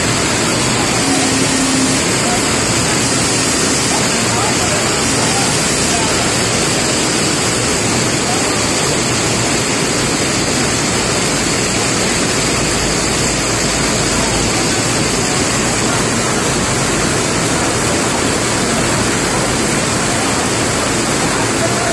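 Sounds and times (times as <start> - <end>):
steady rain falling: 0.0 - 21.9.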